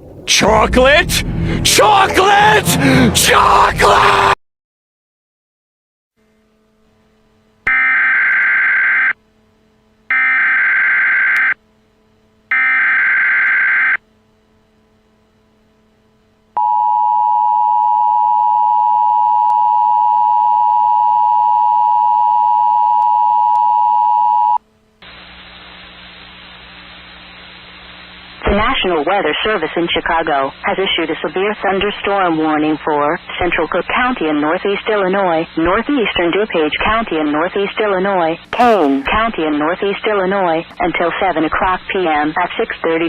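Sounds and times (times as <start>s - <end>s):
static hiss: 24.8s - 36.5s.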